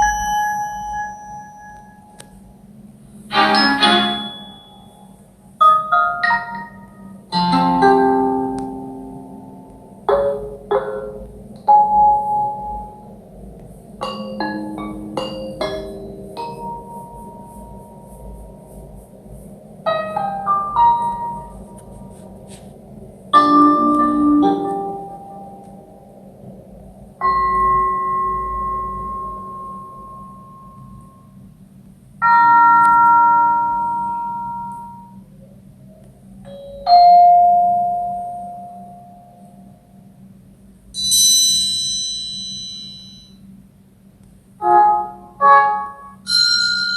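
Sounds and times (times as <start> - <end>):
bell-like notification chime: 0.0 - 2.2, 3.3 - 5.1, 41.0 - 43.4
lower chime: 0.0 - 11.0, 11.7 - 18.9, 23.4 - 31.6, 41.0 - 43.5
slowed notification chime: 3.3 - 5.0.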